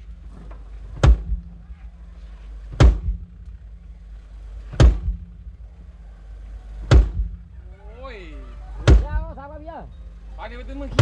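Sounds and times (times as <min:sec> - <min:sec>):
steady low hum: 0:00.0 - 0:11.0
drum hits through pa: 0:06.9 - 0:07.4, 0:08.9 - 0:09.2.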